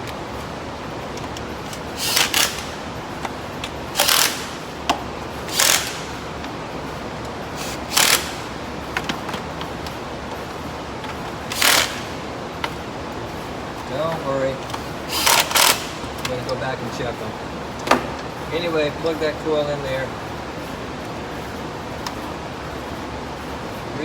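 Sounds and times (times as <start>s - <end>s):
shop fans running: 0.0s - 24.0s
short hissing bursts: 7.6s - 8.4s.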